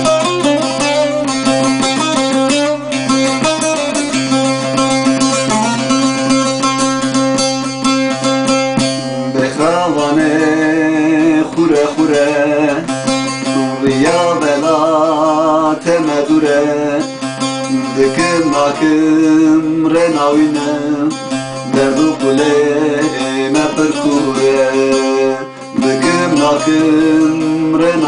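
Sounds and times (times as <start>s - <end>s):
plucked long-necked lute melody: 0.0s - 28.0s
man singing wordless long notes: 9.3s - 28.0s.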